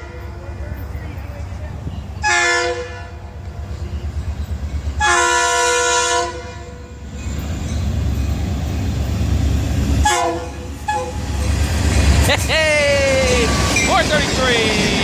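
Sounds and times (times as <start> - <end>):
locomotive engine rumble: 0.0 - 15.0
locomotive air horn blasts: 2.2 - 3.2, 5.0 - 6.9, 10.0 - 11.4.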